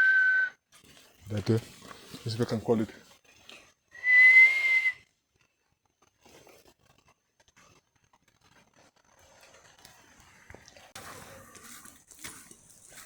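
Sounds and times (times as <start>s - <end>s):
person whistling a high note: 0.0s - 0.6s, 4.0s - 5.0s.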